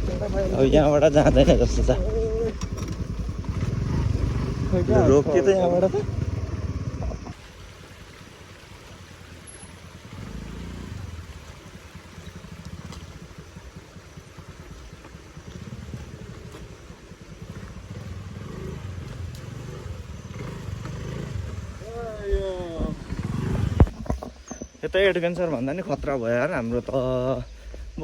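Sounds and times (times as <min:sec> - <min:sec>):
motor scooter engine running: 0:00.0 - 0:07.3, 0:10.0 - 0:24.1.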